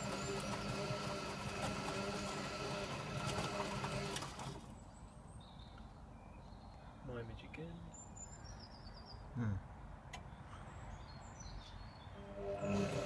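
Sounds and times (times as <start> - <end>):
washing machine humming: 0.0 - 4.6, 12.2 - 13.0.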